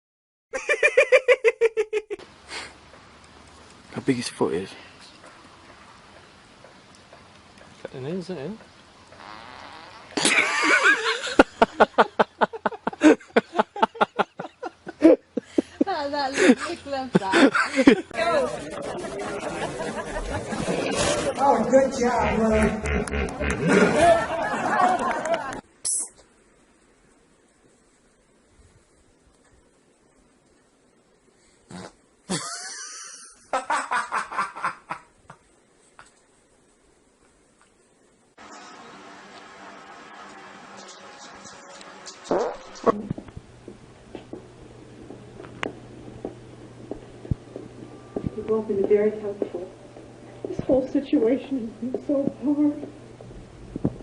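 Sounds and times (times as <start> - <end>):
fart: 9.2 - 10.2, 22.2 - 23.8, 31.7 - 32.0, 42.3 - 43.2
bursts of laughter: 10.2 - 15.8, 22.2 - 25.6, 32.3 - 35.1
person laughing hard: 22.9 - 25.6, 32.3 - 35.0.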